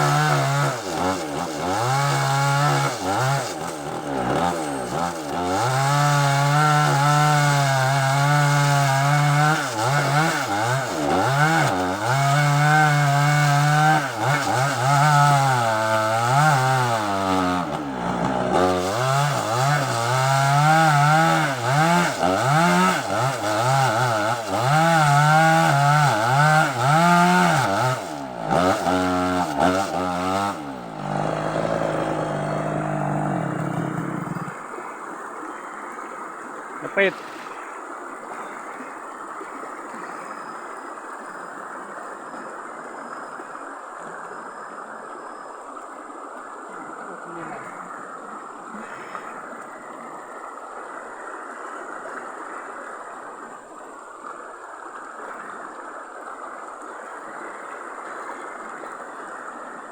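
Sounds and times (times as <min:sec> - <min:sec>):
chainsaw cutting wood: 0:00.0 - 0:34.8, 0:36.8 - 0:37.6.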